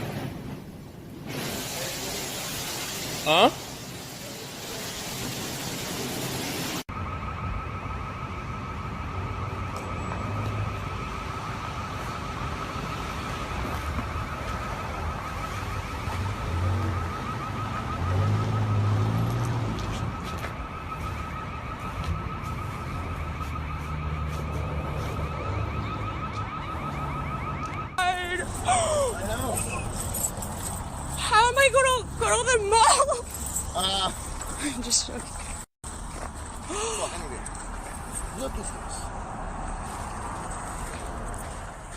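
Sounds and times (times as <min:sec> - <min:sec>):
warning siren wavering tone: 0:06.8 - 0:34.4.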